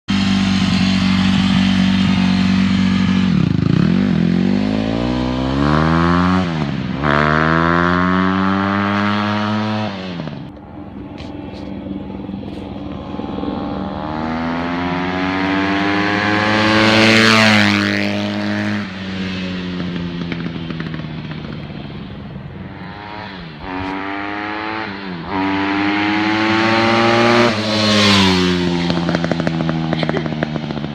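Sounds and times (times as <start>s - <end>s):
dirt bike passing by: 0.1s - 30.9s.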